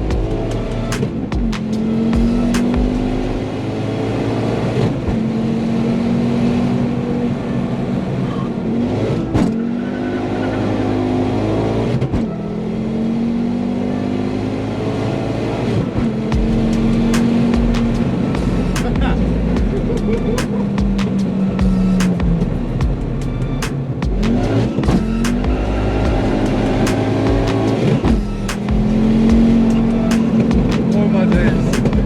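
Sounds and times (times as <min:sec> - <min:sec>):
turbocharged car engine accelerating: 0:00.0 - 0:32.0.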